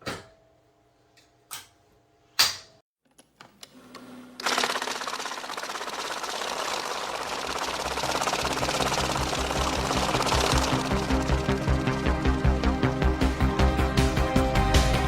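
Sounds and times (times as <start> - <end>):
power tool buzzing: 4.4 - 13.7.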